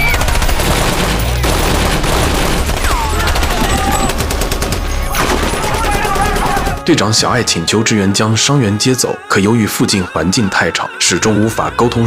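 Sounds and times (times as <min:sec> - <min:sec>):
automatic gunfire: 0:00.0 - 0:06.8.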